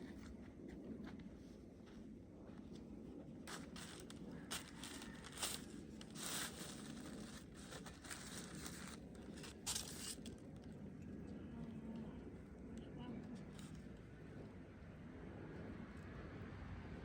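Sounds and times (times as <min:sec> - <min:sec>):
packaging rustling and crinkling: 0:03.5 - 0:10.4.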